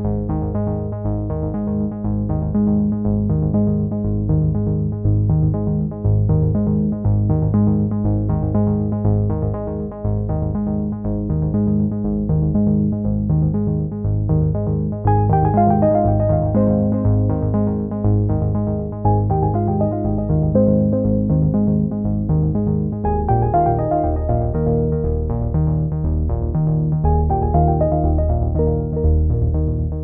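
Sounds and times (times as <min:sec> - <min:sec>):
synthesizer and keyboard music: 0:00.0 - 0:30.0.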